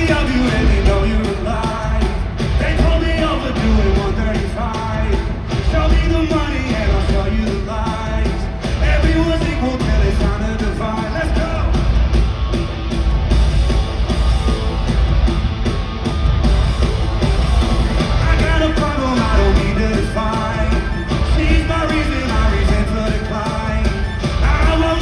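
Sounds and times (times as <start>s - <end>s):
live rock band with singer: 0.0s - 25.0s.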